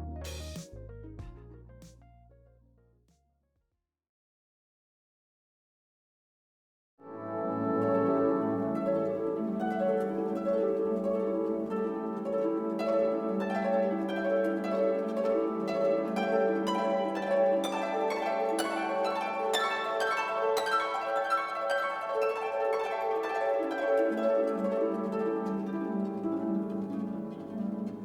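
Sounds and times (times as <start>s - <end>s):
plucked string music: 7.2s - 28.0s.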